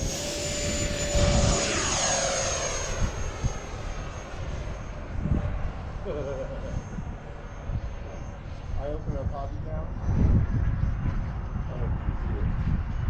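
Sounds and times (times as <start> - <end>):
model airplane motor whining: 0.0 - 9.0
wind buffeting microphone: 0.0 - 13.0.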